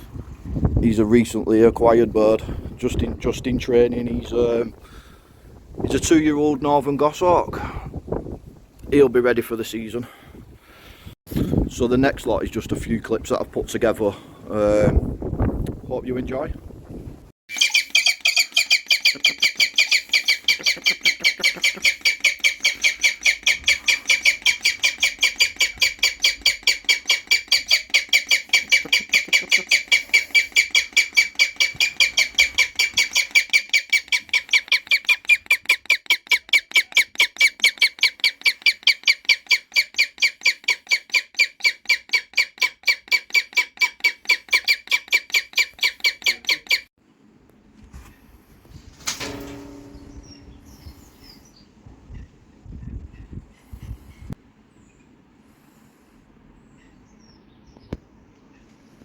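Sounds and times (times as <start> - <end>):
bird of prey calling: 17.5 - 46.9.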